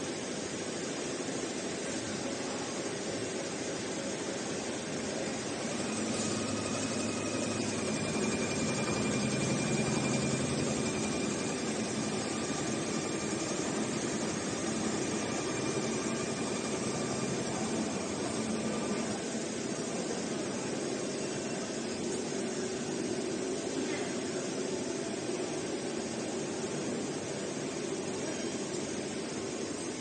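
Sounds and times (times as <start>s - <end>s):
sewing machine whirring: 5.0s - 19.6s.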